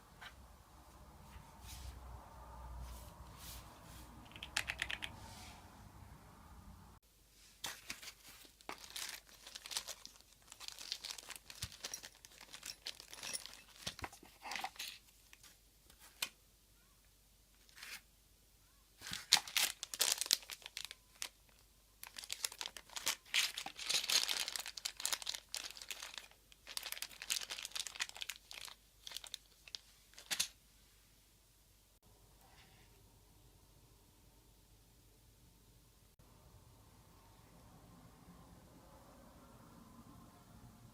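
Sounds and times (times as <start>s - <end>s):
packaging crinkling and tearing: 7.6s - 16.4s, 19.0s - 30.5s.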